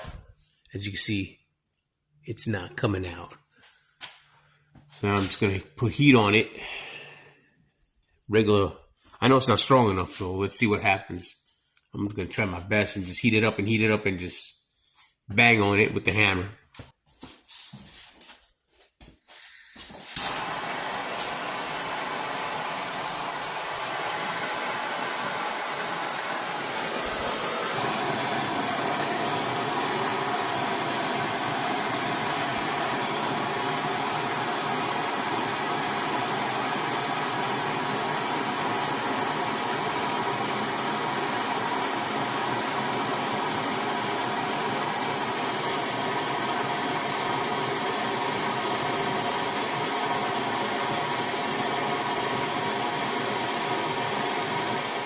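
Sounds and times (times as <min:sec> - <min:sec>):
blow torch flame hissing: 0:19.3 - 0:55.0.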